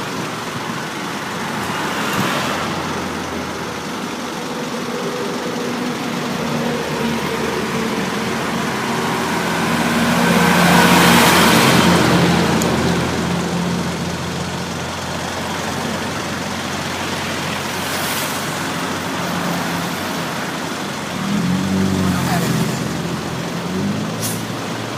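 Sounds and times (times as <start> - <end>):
road traffic: 0.0 - 24.9.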